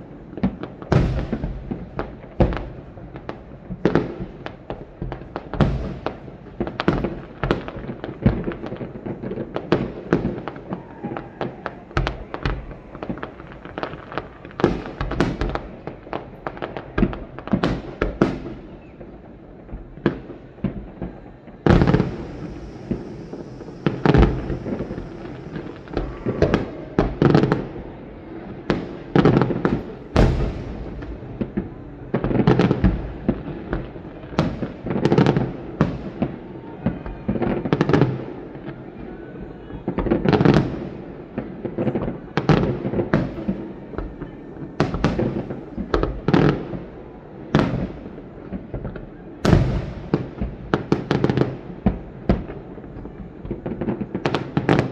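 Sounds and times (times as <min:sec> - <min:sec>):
fireworks shells bursting: 0:21.7 - 0:27.5.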